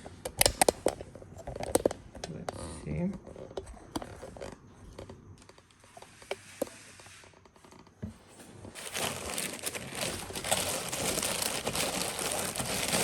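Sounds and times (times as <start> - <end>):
plastic packaging crinkling: 8.7 - 13.0.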